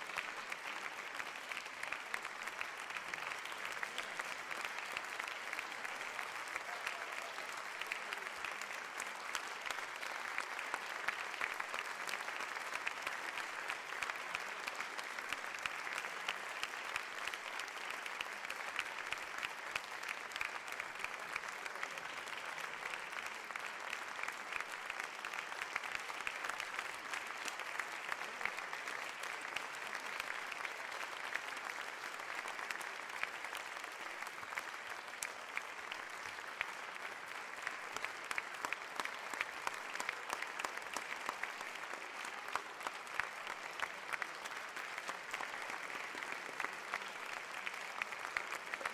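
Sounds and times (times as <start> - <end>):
crowd applauding: 0.0 - 48.9.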